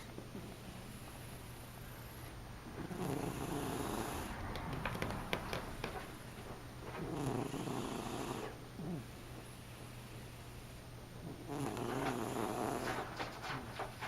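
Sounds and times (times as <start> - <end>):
pet snoring: 0.3 - 5.6, 6.9 - 9.5, 11.2 - 13.1.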